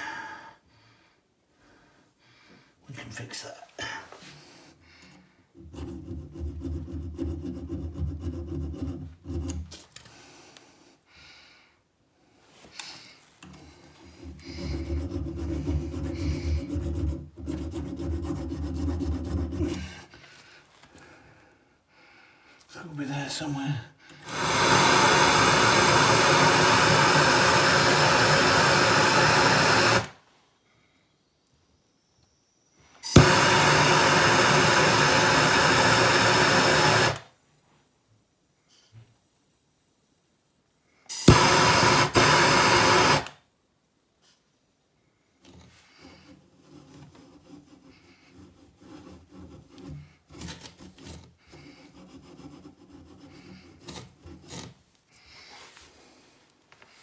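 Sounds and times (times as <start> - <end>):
faint rubbing: 12.4 - 21.0, 45.5 - 57.0
blowtorch roaring: 24.2 - 30.2, 33.0 - 37.2, 41.1 - 43.3.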